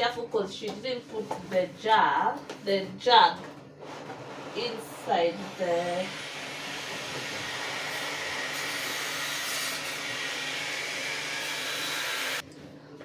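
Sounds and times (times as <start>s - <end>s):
power tool grinding and hissing: 5.2s - 12.4s.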